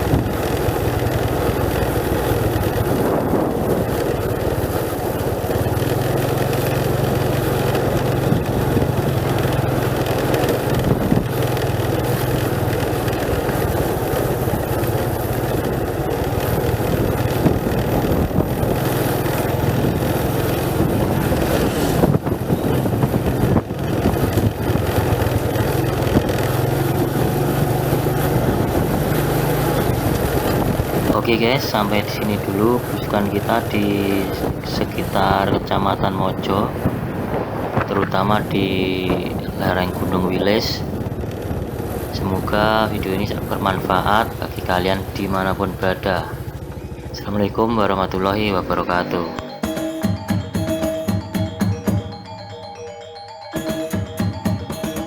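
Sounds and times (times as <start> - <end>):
wind and road noise: 0.0 - 53.1
vehicle engine running: 0.0 - 55.0
knocks from the road: 36.8 - 38.5.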